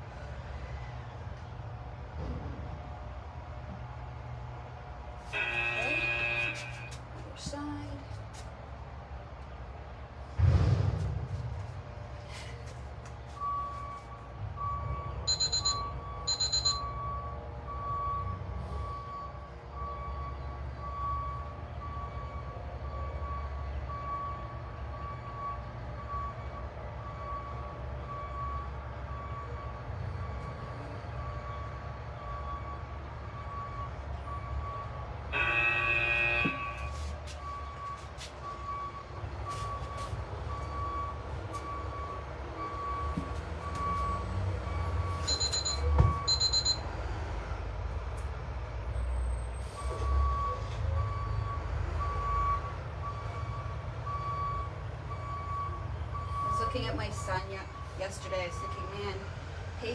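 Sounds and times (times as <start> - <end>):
low engine rumble: 0.0 - 35.3
reversing alarm beeping: 13.4 - 46.9, 49.0 - 59.2.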